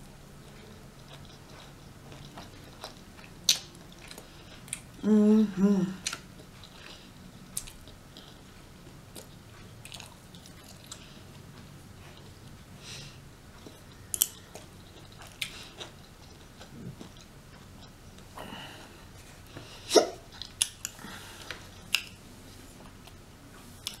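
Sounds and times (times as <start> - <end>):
person chewing food: 0.4 - 5.0, 5.9 - 24.0
person hiccuping: 19.9 - 20.2.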